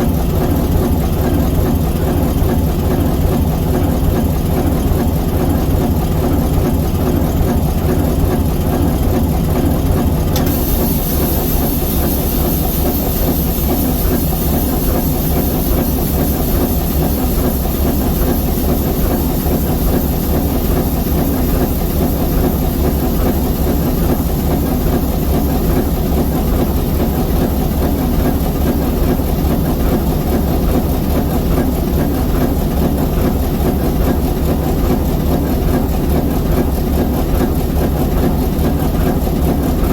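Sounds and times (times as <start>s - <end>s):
diesel locomotive engine running: 0.0s - 39.9s
high hiss: 10.4s - 27.7s.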